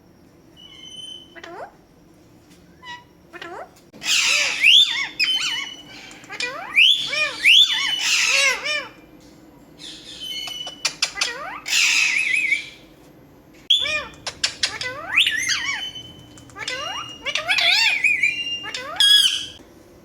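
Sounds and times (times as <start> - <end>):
parrot squawking: 2.8 - 9.0, 9.8 - 12.8, 13.7 - 19.6
parrot clicks: 13.9 - 15.0, 16.3 - 16.9.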